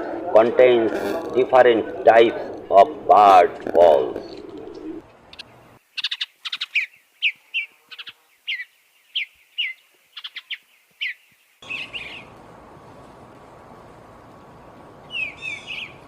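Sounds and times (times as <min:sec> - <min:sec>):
songbird chirping: 0:02.3 - 0:16.0
steady hiss: 0:11.6 - 0:16.0.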